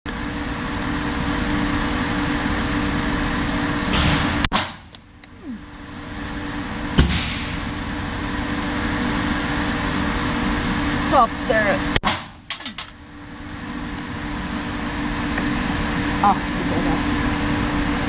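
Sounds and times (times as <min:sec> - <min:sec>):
steady background roar: 0:00.1 - 0:18.0
pistol shots: 0:12.0 - 0:12.8.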